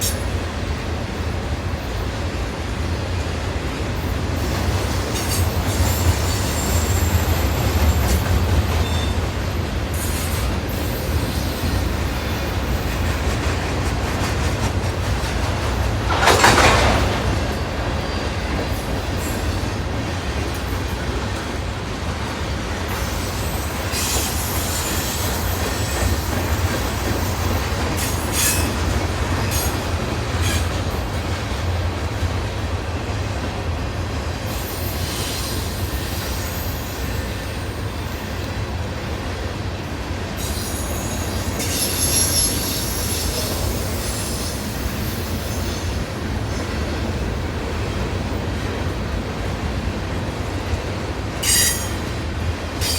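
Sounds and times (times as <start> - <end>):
train wheel squeal: 0.0 - 0.4, 4.0 - 14.1, 15.7 - 19.9, 22.8 - 32.2, 34.4 - 38.8, 40.3 - 47.0, 51.4 - 52.9
freight train cars rumbling past: 0.0 - 52.9
train cars clanking: 0.0 - 52.9.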